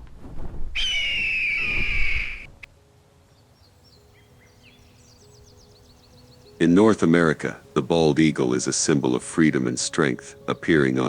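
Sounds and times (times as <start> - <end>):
bird of prey screaming: 0.8 - 2.5
faint bird chirps: 0.8 - 2.6, 3.3 - 6.6.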